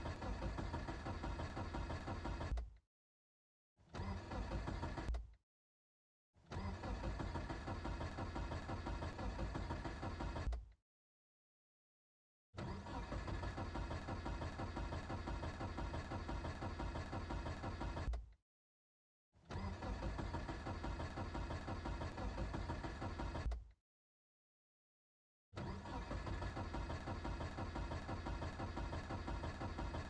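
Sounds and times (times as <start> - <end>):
car starter cranking engine: 0.0 - 2.7, 3.9 - 5.3, 6.5 - 10.6, 12.6 - 18.2, 19.4 - 23.6, 25.6 - 30.0.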